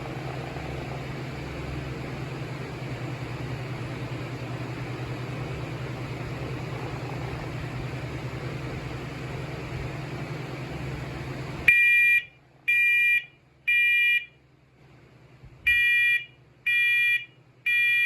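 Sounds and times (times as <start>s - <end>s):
smoke alarm beeps: 11.7s - 14.3s, 15.7s - 18.0s.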